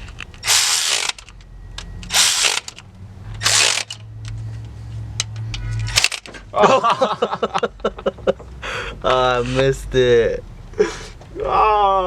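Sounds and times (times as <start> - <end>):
impact wrench hammering: 0.0 - 1.3, 1.9 - 4.1, 5.2 - 6.4.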